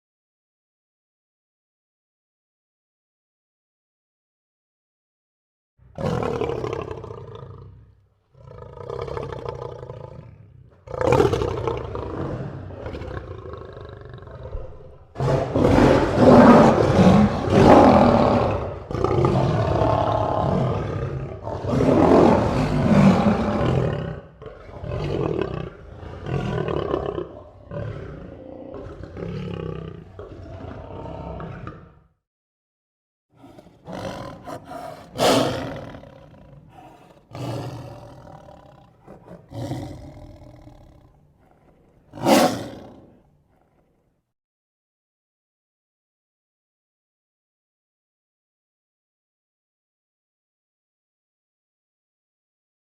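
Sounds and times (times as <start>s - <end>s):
lion roaring: 5.9s - 32.2s, 33.4s - 44.0s.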